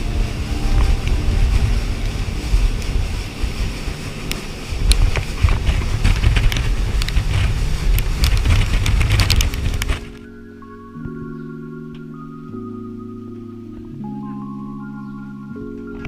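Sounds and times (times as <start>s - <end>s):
rush of water: 0.0s - 10.2s
wind buffeting microphone: 0.0s - 12.7s.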